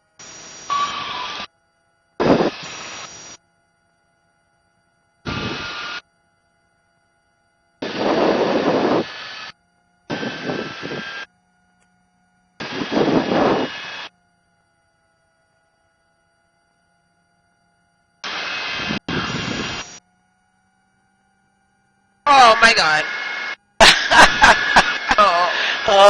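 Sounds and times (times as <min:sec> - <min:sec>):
helicopter engine and rotor: 0:00.0 - 0:26.0
faint intercom tones: 0:22.3 - 0:23.6.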